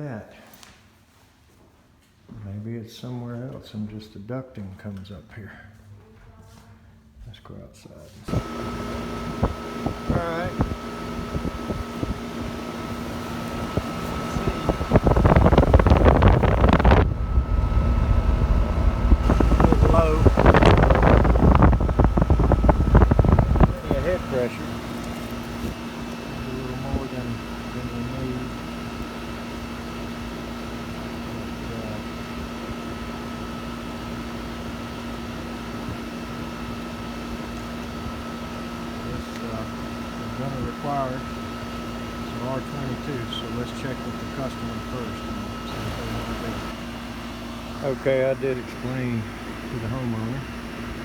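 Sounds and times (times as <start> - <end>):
air conditioner unit humming: 0.0 - 51.0
microphone handling noise: 8.3 - 25.8
wind buffeting microphone: 13.5 - 24.8.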